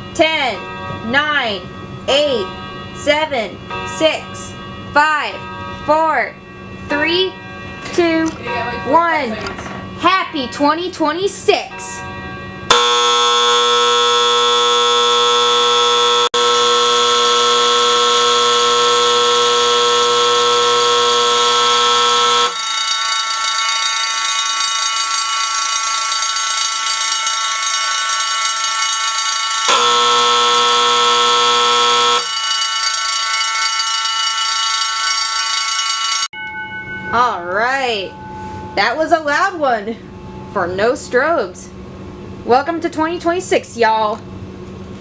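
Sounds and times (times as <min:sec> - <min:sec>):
vibrating alarm bells: 0:11.5 - 0:41.0
fire alarm horns blaring: 0:12.4 - 0:36.3.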